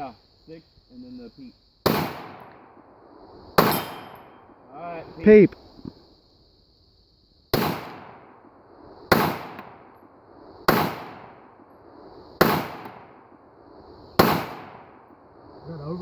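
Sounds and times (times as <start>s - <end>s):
gunshots with echo: 1.9s - 2.6s, 3.6s - 4.5s, 7.5s - 8.4s, 9.1s - 9.9s, 10.7s - 11.6s, 12.4s - 13.2s, 14.2s - 15.0s.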